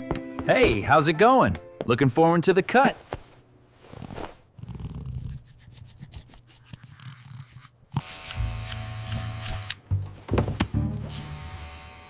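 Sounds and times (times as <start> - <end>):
scissors snipping hair: 5.1 - 9.8
electric hair clipper buzzing: 8.0 - 9.8, 11.1 - 12.0.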